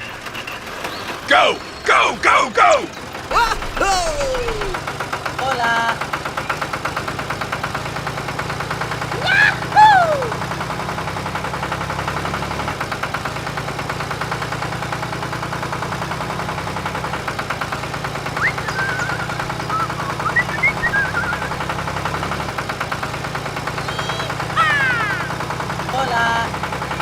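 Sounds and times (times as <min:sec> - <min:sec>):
tractor engine chugging: 0:00.0 - 0:27.0
high squeaky chirps: 0:18.3 - 0:22.1, 0:23.8 - 0:25.4.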